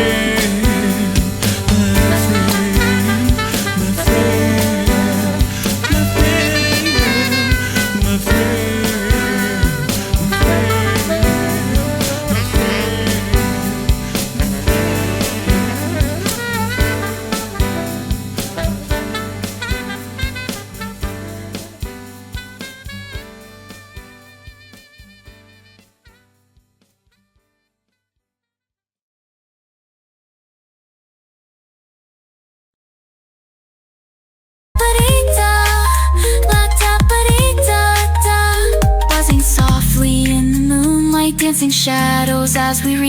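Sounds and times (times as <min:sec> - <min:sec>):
lead melody: 0:00.0 - 0:22.4, 0:34.8 - 0:43.0
bass line: 0:00.0 - 0:23.7, 0:34.8 - 0:43.0
drum beat: 0:00.0 - 0:24.2, 0:34.8 - 0:35.4, 0:36.5 - 0:37.7, 0:38.6 - 0:40.3.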